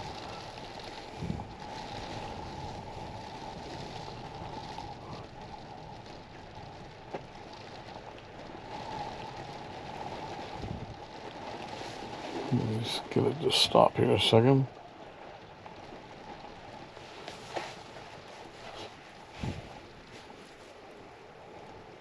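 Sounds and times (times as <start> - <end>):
rain on a camper: 0.0 - 22.0
storm wind: 0.0 - 22.0.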